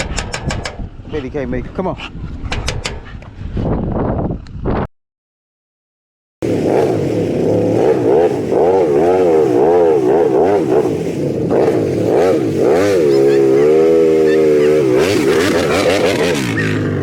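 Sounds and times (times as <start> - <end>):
vehicle engine revving: 6.4 - 17.0.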